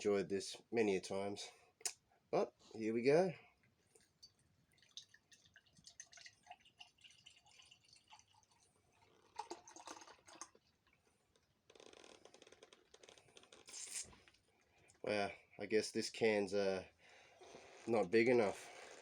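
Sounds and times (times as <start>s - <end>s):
beer pouring into glass: 4.3s - 10.8s.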